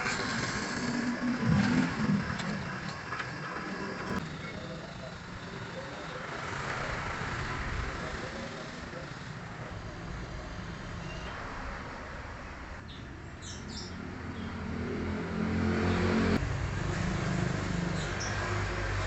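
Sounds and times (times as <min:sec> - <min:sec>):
sawmill machinery running: 0:00.0 - 0:10.0
bird chirps: 0:12.8 - 0:14.6.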